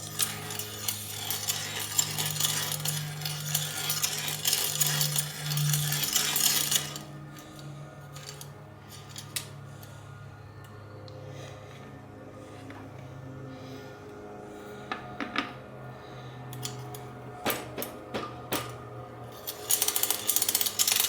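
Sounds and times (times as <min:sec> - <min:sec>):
bicycle crank clinking and ticking: 0:00.0 - 0:10.0, 0:16.5 - 0:21.0.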